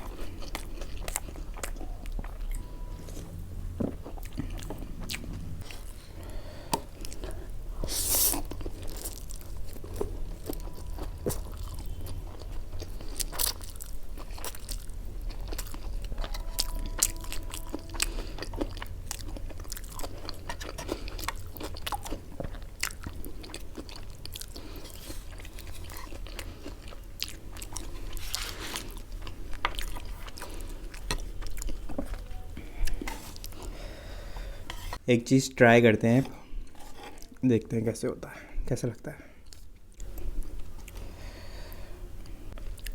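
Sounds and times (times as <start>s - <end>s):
low hum: 0.0s - 7.9s
person chewing food: 0.0s - 35.0s, 36.6s - 37.4s, 39.4s - 42.9s.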